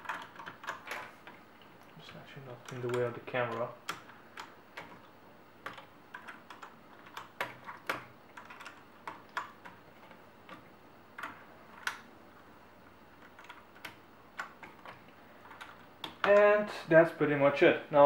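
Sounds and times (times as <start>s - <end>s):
keycaps clicking onto switches: 0.0s - 1.4s, 2.5s - 12.1s, 13.2s - 16.5s.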